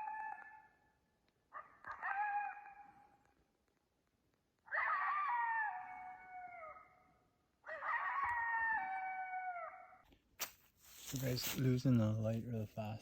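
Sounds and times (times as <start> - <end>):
canid howls: 1.6 - 3.2, 4.7 - 10.0.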